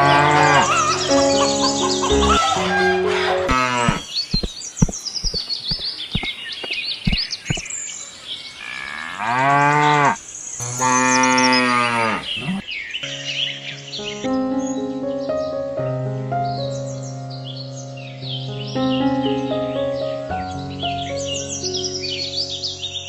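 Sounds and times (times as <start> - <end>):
cow mooing: 0.0 - 0.9, 2.7 - 4.0, 8.7 - 12.6
birds chirping: 0.0 - 15.5
sharp clicks: 3.9 - 7.6.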